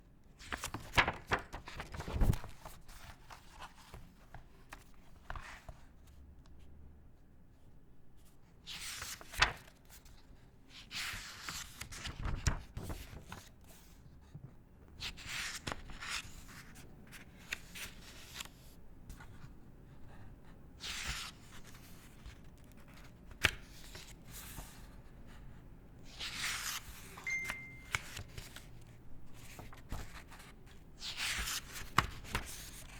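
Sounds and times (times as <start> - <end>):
paper rustling and crinkling: 0.4 - 5.9, 8.7 - 14.4, 15.0 - 19.4, 26.1 - 32.9
paper snapping and crackling: 0.5 - 2.5.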